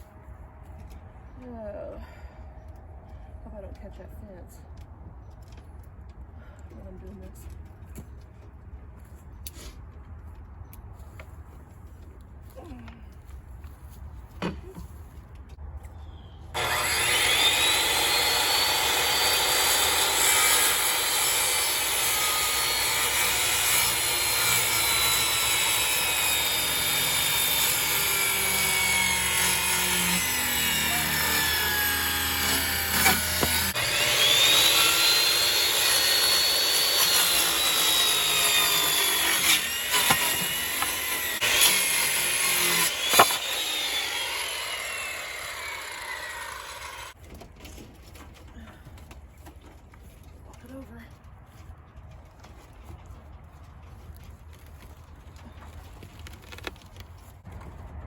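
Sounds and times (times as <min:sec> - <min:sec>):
power saw cutting wood: 0:16.6 - 0:47.2.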